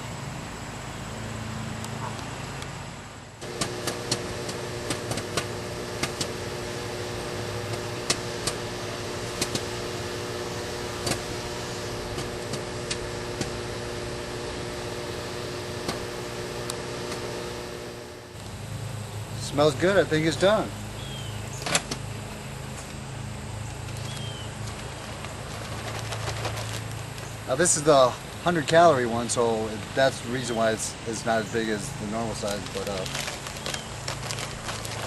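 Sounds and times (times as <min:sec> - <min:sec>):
popcorn popping: 0:03.4 - 0:18.5
microwave oven humming: 0:03.4 - 0:35.0.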